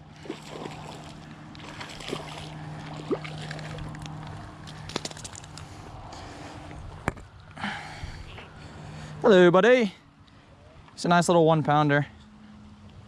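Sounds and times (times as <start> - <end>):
water sloshing and splashing: 0.0 - 5.4
steady low hum: 0.0 - 13.0.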